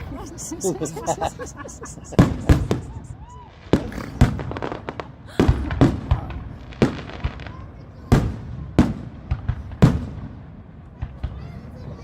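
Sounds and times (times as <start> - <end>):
firework shells booming: 0.0 - 11.4
smaller firework pops: 2.2 - 11.6.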